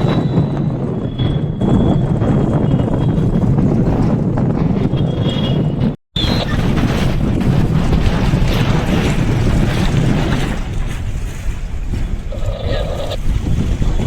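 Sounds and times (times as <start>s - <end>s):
wind buffeting microphone: 0.0s - 14.0s
water noise: 6.2s - 14.0s.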